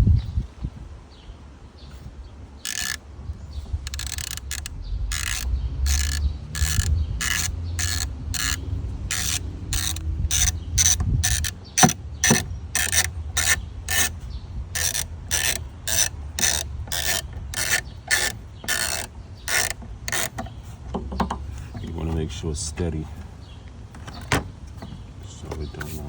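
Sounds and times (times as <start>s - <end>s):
hand ratchet clicking: 2.6s - 3.0s, 3.8s - 14.2s, 14.8s - 20.5s.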